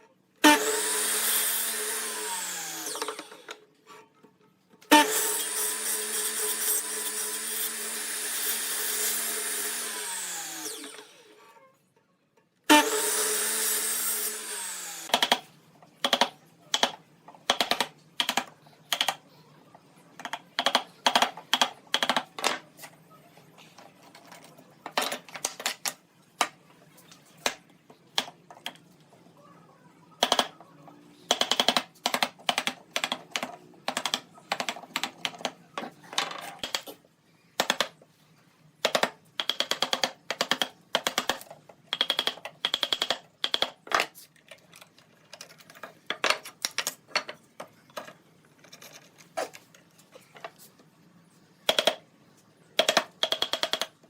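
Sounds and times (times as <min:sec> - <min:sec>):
power tool motor winding down: 0:00.5 - 0:03.5, 0:05.0 - 0:11.3, 0:12.7 - 0:15.1
sharp irregular clicks and knocks: 0:15.1 - 0:19.2, 0:20.2 - 0:22.6, 0:30.2 - 0:30.6, 0:31.3 - 0:37.0, 0:37.6 - 0:38.1, 0:38.8 - 0:50.6, 0:51.6 - 0:52.0, 0:52.8 - 0:54.0.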